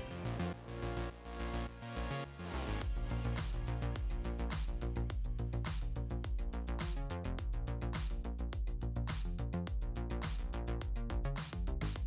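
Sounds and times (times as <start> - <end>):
background music with beat: 2.8 - 12.0.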